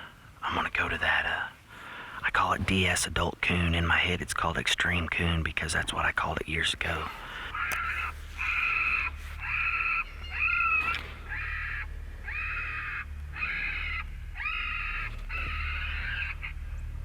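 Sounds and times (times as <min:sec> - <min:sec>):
electronic raccoon squalls: 0:07.0 - 0:16.6.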